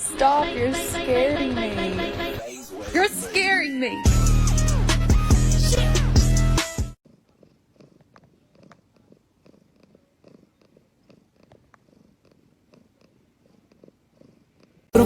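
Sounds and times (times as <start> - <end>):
cat purring: 7.1 - 15.0.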